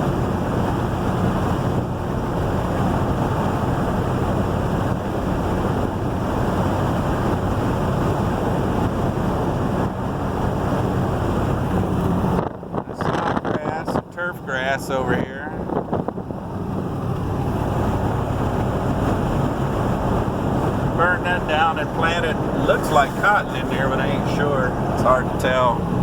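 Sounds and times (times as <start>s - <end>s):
low engine hum: 0.0s - 26.0s
tyre and wind rush: 15.0s - 26.0s.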